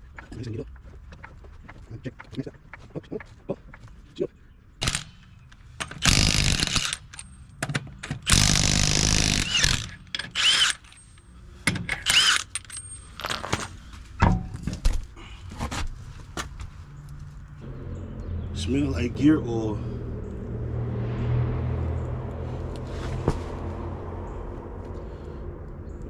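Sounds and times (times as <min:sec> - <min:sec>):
mechanical tool bursts: 0:04.8 - 0:05.2, 0:05.9 - 0:07.3, 0:08.2 - 0:11.1, 0:12.0 - 0:13.8.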